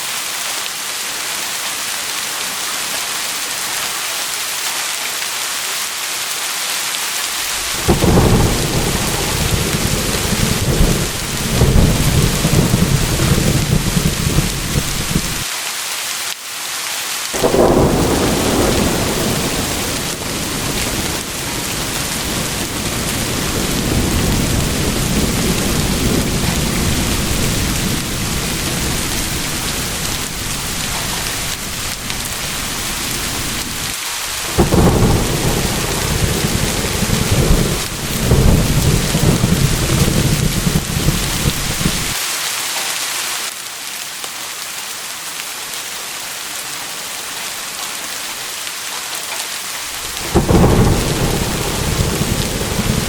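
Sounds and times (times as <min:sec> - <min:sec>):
heavy rain: 0:00.0 - 0:53.0
rolling thunder: 0:07.4 - 0:15.4, 0:17.4 - 0:42.2, 0:49.9 - 0:53.0.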